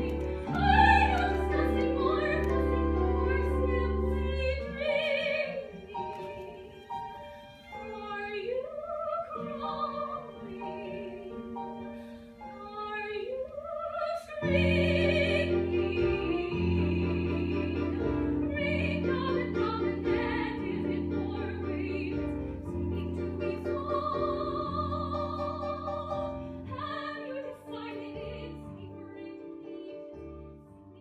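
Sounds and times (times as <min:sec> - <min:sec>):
soprano singing with vibrato: 0:00.0 - 0:31.0.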